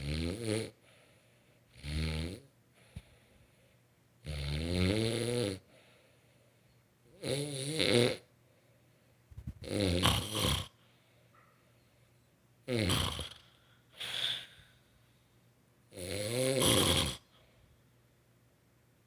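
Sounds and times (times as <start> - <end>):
woman snoring: 0.0 - 0.8, 1.7 - 2.5, 4.2 - 5.7, 7.1 - 8.3, 9.6 - 10.8, 12.7 - 14.6, 15.9 - 17.4
breathy breath: 0.8 - 1.7, 2.7 - 3.9, 5.7 - 6.8, 13.4 - 15.4.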